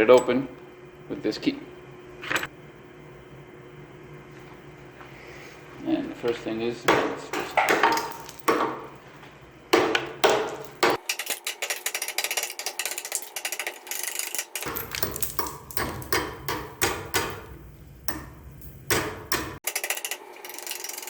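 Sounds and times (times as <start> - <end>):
hammer striking ice: 14.6 - 19.8.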